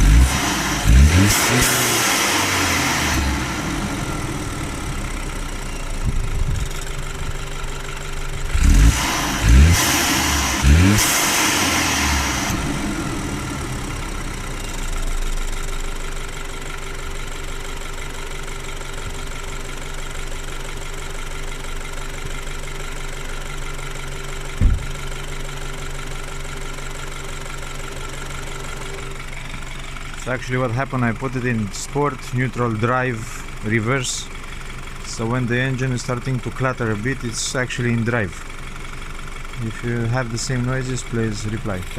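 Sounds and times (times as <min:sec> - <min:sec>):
car engine idling with clatter: 0:00.0 - 0:41.9
heavy thumps: 0:24.6 - 0:25.2.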